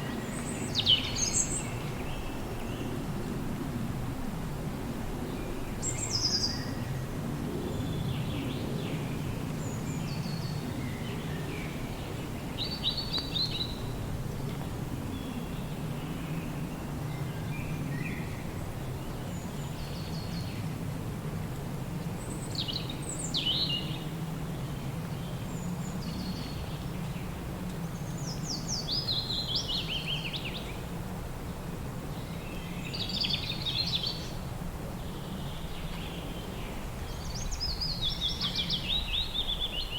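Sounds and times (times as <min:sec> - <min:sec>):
wind humming through forest: 0:00.0 - 0:39.9
songbirds chirping: 0:22.2 - 0:39.9.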